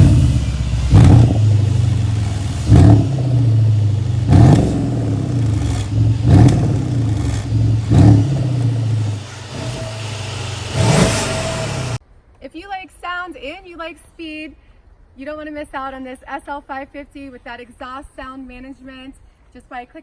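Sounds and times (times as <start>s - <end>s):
car engine revving: 0.0s - 12.0s.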